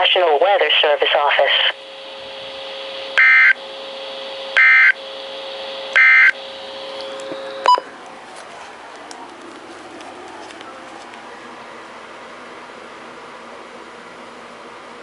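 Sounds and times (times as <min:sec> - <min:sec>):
faint steady hum: 0:00.0 - 0:15.0
harsh buzzing data tones: 0:00.9 - 0:06.5.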